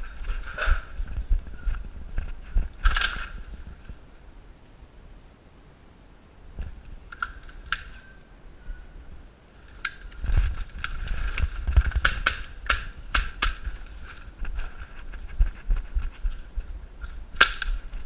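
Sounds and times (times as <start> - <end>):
sharp clicks and snaps: 7.1 - 8.1, 9.6 - 13.7, 15.2 - 17.9.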